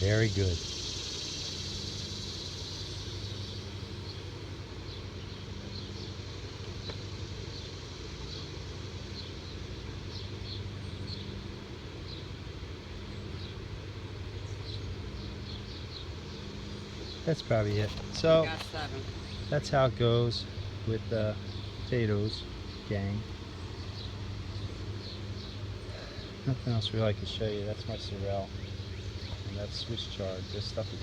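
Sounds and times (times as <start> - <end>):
low motor hum: 0.0 - 31.0.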